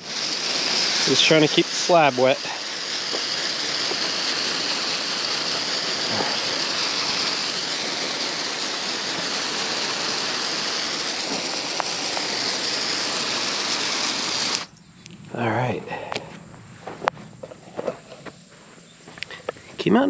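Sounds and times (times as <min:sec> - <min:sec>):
garden hose spraying water: 0:00.0 - 0:14.7.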